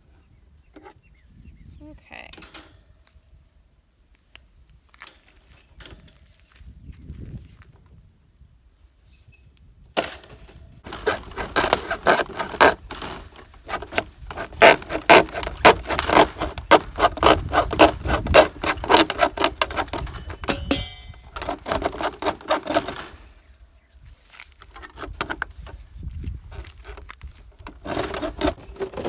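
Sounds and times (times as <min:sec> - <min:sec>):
hand saw rasping through gutter: 0:10.8 - 0:23.5, 0:27.6 - 0:29.0.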